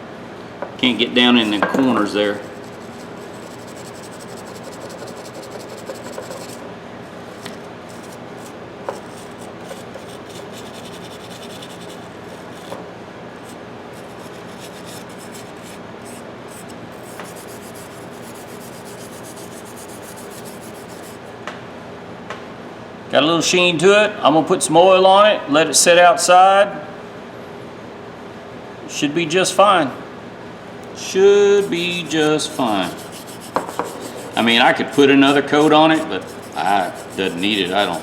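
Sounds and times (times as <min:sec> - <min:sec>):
wire brush scrubbing metal: 0:01.1 - 0:12.8, 0:13.4 - 0:21.2, 0:31.3 - 0:38.0.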